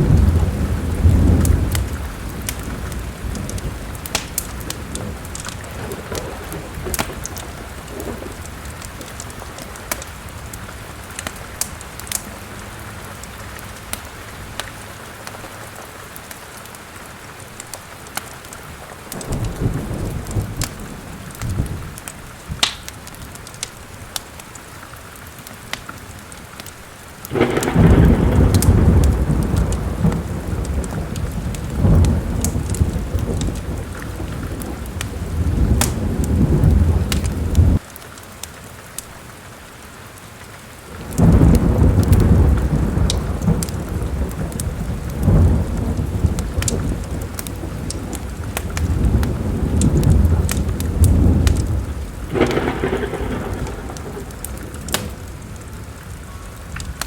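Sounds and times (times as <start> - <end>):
thunder rolling: 0.0 - 13.1, 19.1 - 22.7, 27.3 - 37.8, 40.9 - 57.0
log fire crackling: 0.0 - 57.0
steady rain: 0.0 - 57.0.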